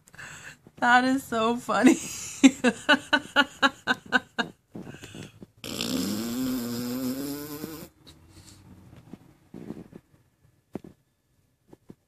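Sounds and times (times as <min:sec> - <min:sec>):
woman laughing: 0:01.8 - 0:04.6.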